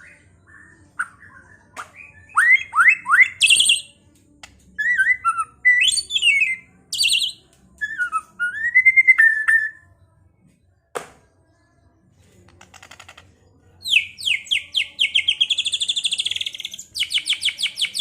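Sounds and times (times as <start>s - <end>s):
bird singing whistled phrases: 0.0s - 3.9s, 4.8s - 9.8s, 13.9s - 18.0s.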